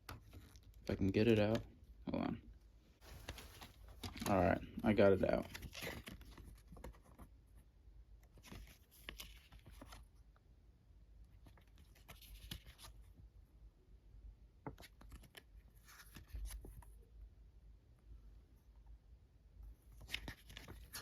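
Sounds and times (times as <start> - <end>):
paper rustling: 3.0 - 7.3, 8.3 - 10.1, 11.4 - 13.0, 14.7 - 16.9, 19.9 - 21.0.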